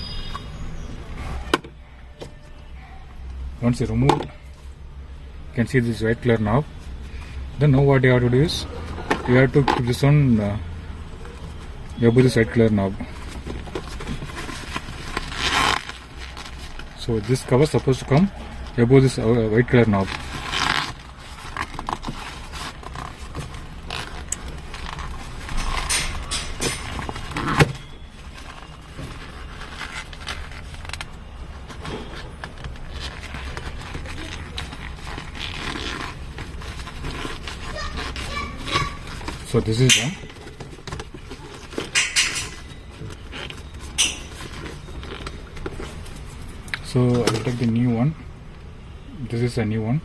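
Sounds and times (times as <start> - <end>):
scraping and rustling: 11.2 - 47.8.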